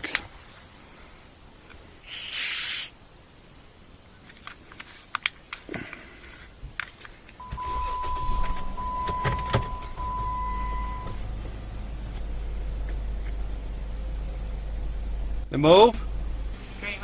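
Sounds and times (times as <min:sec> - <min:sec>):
steady high tone: 0:07.4 - 0:11.6.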